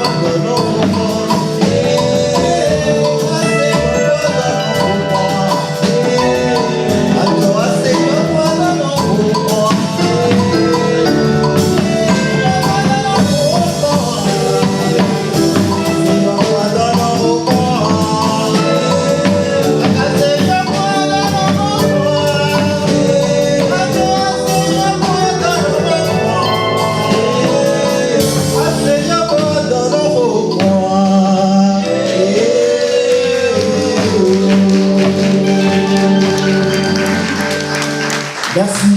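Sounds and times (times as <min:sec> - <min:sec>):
person singing: 0:00.0 - 0:38.9
steady percussion and instruments: 0:00.0 - 0:38.9.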